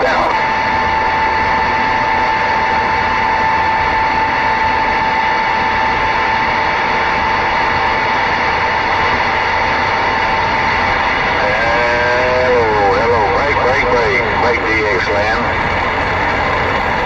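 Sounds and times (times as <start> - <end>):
radio static hiss: 0.0 - 0.4, 11.3 - 15.6.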